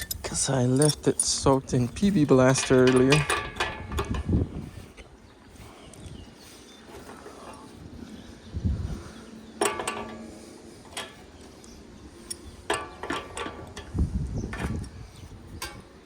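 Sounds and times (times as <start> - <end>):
metallic clinks and knocks: 0.0 - 4.6, 9.6 - 11.3, 12.2 - 16.0.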